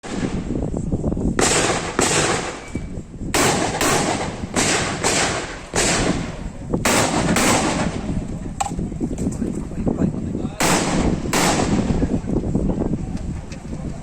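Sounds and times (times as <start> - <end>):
shotgun shots echoing: 1.4 - 2.8, 3.4 - 8.2, 10.6 - 12.1.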